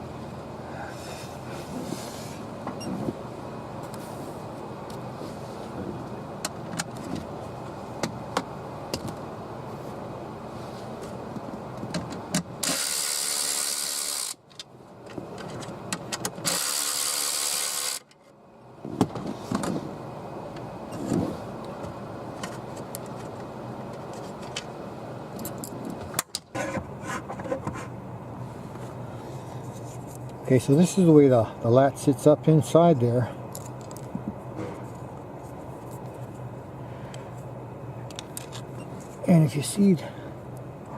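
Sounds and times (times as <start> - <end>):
clicks and rattles of parts: 11.0 - 18.4, 21.8 - 24.7, 33.5 - 36.5, 38.1 - 39.2.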